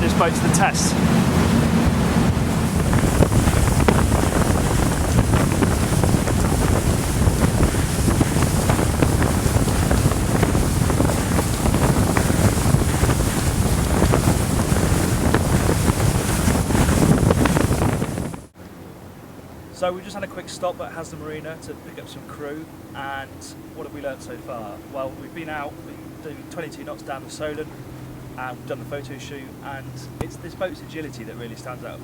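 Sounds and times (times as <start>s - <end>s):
wind buffeting microphone: 0.0s - 18.6s
water rushing past boat hull: 0.0s - 32.0s.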